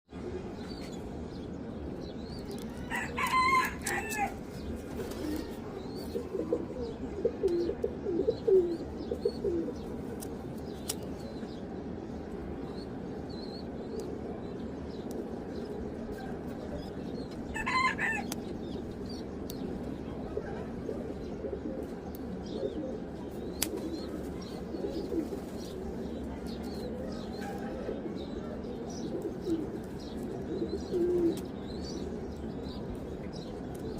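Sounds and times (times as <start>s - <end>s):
pigeons cooing: 2.7s - 10.0s, 16.1s - 33.9s.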